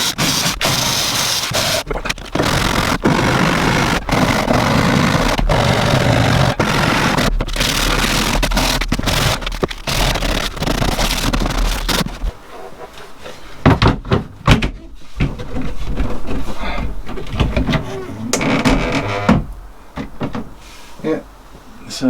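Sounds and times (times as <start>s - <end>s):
power tool on fibreglass: 0.0s - 12.3s.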